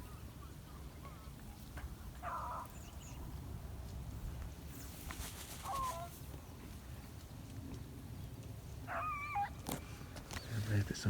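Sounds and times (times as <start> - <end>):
dog yelping: 8.9 - 9.6.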